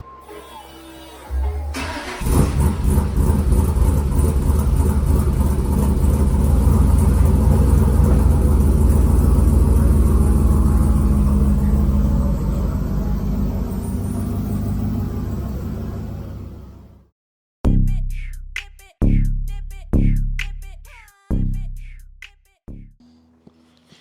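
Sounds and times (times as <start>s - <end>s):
truck engine running loudly: 1.7s - 17.0s.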